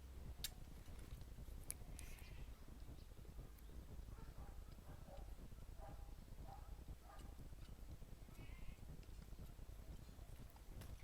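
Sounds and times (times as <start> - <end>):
low steady rumble: 0.0 - 11.0
baby goats feeding: 6.8 - 11.0.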